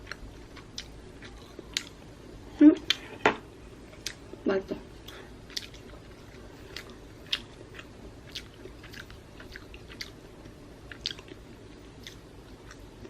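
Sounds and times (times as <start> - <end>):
person chewing with crunches: 0.0 - 2.1, 5.0 - 13.0.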